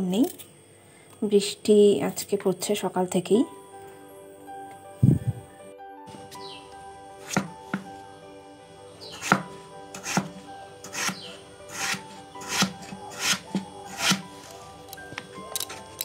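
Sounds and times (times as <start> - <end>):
soft background music: 0.0 - 16.0
knife cutting vegetables on board: 7.2 - 7.9, 9.0 - 14.6.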